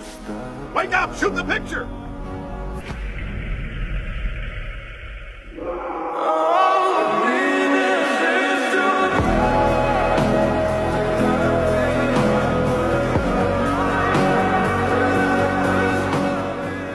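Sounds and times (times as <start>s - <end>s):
music with sung melody: 0.0s - 3.0s, 6.2s - 16.9s
choir-like sustained voices: 0.0s - 3.4s, 4.7s - 16.9s
low rumble: 1.9s - 6.2s.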